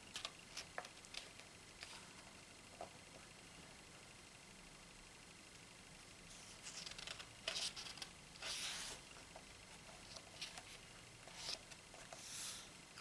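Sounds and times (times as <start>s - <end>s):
book pages turning: 6.5s - 9.0s, 9.8s - 12.2s.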